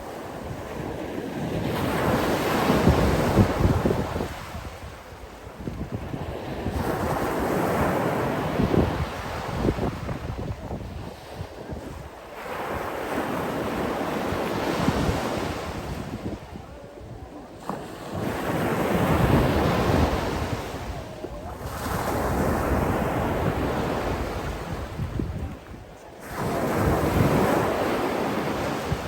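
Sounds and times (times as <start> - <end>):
sea waves breaking on shore: 0.0 - 29.0
wind rumble on microphone: 0.0 - 29.0.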